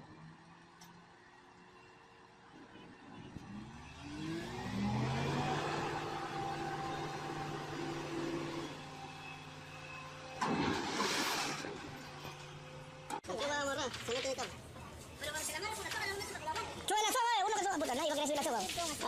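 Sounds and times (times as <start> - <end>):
vehicle engine revving: 3.2 - 13.1.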